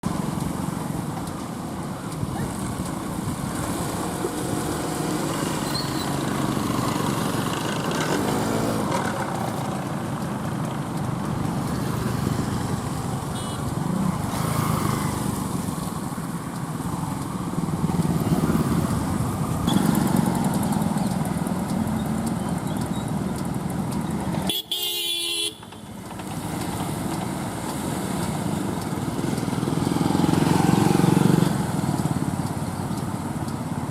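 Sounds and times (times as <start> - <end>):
car and motorcycle engines: 0.0 - 24.7, 25.5 - 33.9
vehicles driving through water: 0.0 - 33.9
horn toots: 24.5 - 25.6.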